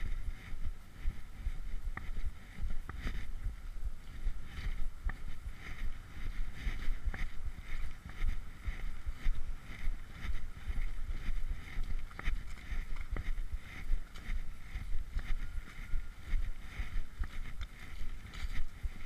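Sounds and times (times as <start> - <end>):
faint high pulsing sound: 0.0 - 19.0
wind buffeting microphone: 0.0 - 19.0.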